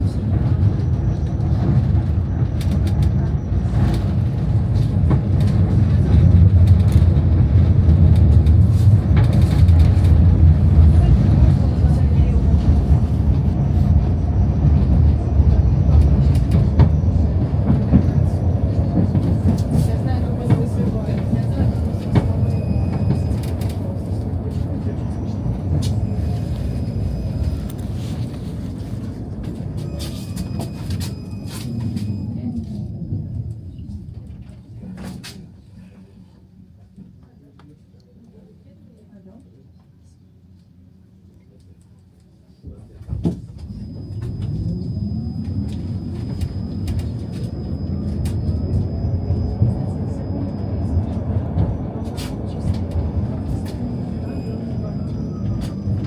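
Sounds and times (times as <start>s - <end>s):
tram rumbling on rails: 0.0s - 37.8s, 38.4s - 56.0s
faint high squeal: 21.6s - 24.1s, 24.8s - 28.7s, 29.8s - 33.5s, 43.4s - 56.0s.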